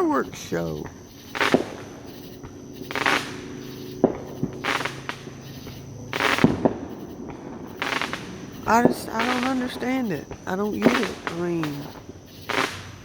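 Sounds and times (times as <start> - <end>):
fireworks bangs and crackling: 0.0 - 13.0.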